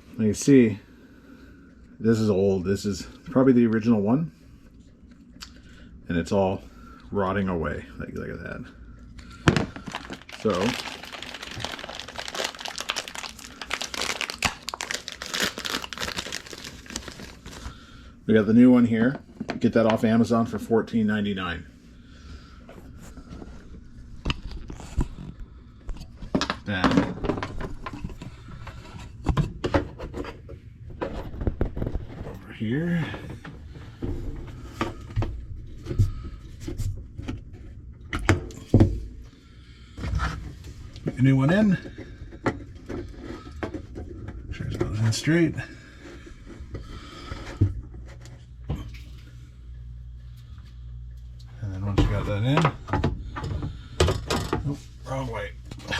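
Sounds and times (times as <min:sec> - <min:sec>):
crinkling and rustling: 0:09.2 - 0:18.0, 0:22.8 - 0:37.9.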